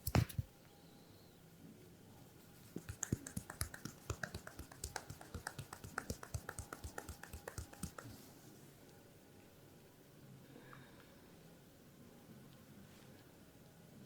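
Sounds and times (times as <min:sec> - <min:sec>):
percussive massage tapping: 0:00.0 - 0:00.5, 0:02.6 - 0:08.2.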